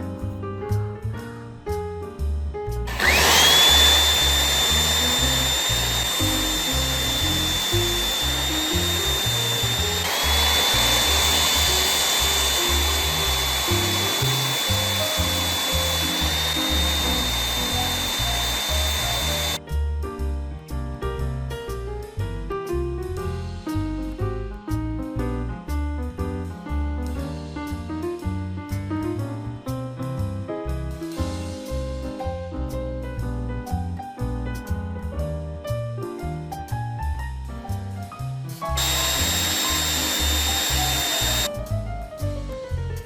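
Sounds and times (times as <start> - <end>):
piano music: 0.0 - 23.1
power drill whining: 2.9 - 19.6, 38.8 - 41.5.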